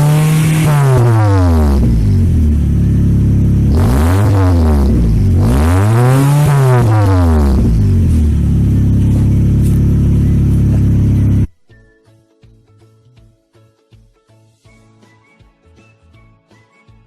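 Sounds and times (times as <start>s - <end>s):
engine revving and idling: 0.0s - 11.5s.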